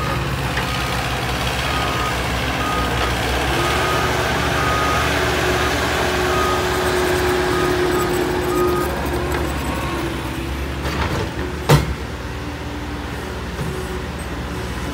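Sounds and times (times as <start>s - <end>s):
diesel heavy equipment running: 0.0s - 14.9s
backup alarm beeping: 3.6s - 9.0s.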